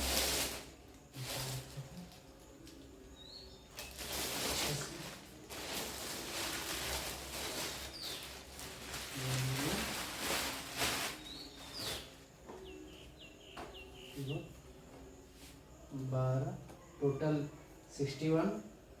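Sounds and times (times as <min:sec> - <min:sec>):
rustling handling noise: 0:00.0 - 0:02.9, 0:03.6 - 0:12.8
faint high chirp: 0:02.6 - 0:04.1, 0:11.1 - 0:18.0.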